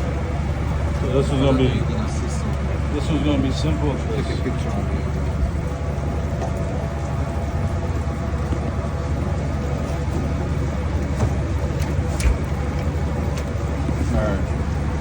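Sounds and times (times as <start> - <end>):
machinery humming: 0.0 - 15.0.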